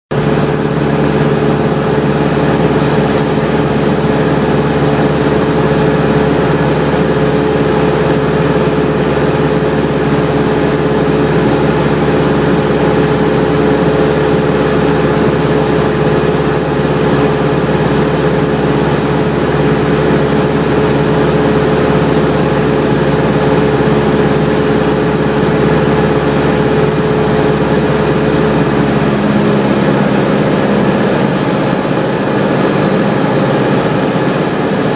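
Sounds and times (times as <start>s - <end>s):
propeller plane engine droning: 0.1s - 34.9s.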